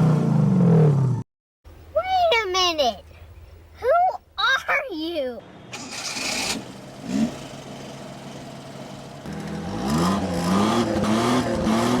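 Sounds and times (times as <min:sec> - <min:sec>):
car engine idling and revving: 0:00.0 - 0:01.2, 0:05.4 - 0:12.0.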